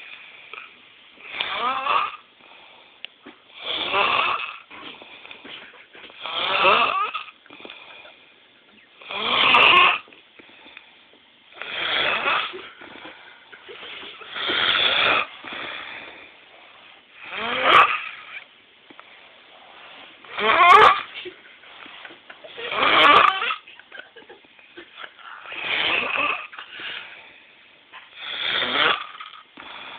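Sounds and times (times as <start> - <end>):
snoring: 1.2 - 2.3, 3.6 - 4.8, 6.2 - 8.2, 9.0 - 10.1, 11.6 - 13.1, 14.3 - 16.3, 17.2 - 18.4, 20.3 - 21.2, 22.6 - 23.6, 25.4 - 26.6, 28.1 - 29.9.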